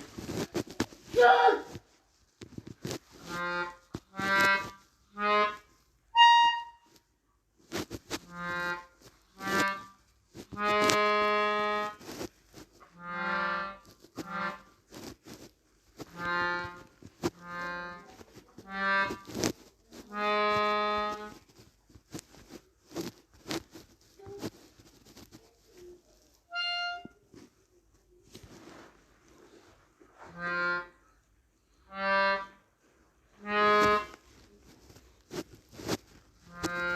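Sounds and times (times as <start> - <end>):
melodica held notes: 3.2 - 7.0, 8.1 - 9.9, 10.6 - 12.2, 20.1 - 21.4, 26.5 - 27.2, 31.9 - 32.6, 33.4 - 34.2, 36.5 - 36.9.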